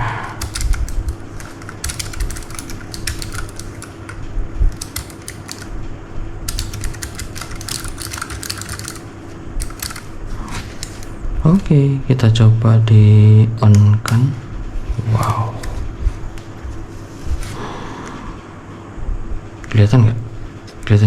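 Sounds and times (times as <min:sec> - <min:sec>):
mechanical keyboard typing: 0:00.4 - 0:05.8, 0:06.4 - 0:10.2, 0:10.8 - 0:11.1.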